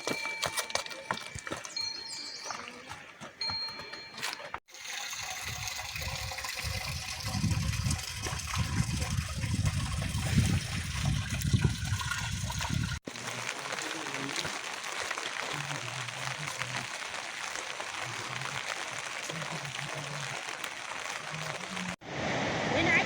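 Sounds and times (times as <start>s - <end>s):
rain falling: 13.0s - 22.0s.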